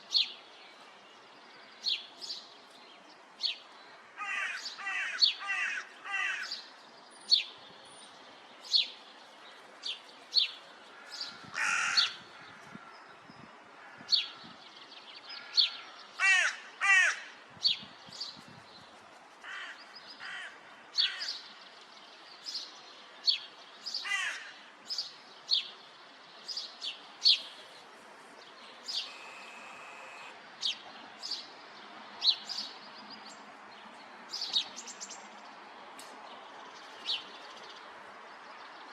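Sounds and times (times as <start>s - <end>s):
crows cawing: 4.2s - 6.6s, 10.9s - 12.9s, 15.4s - 17.4s, 19.4s - 21.4s, 24.0s - 24.6s
high-pitched bird calls: 28.8s - 30.8s.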